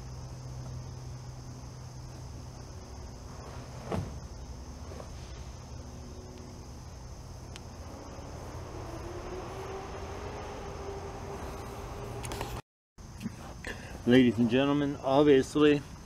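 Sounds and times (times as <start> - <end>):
low hum: 0.0 - 12.6
crickets chirping: 0.0 - 16.0
short thump: 3.8 - 4.2.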